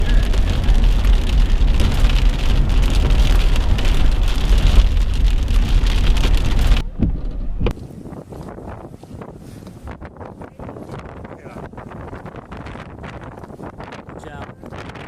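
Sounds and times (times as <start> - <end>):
heavy storm rain: 0.0 - 6.9
wind buffeting microphone: 0.0 - 15.0.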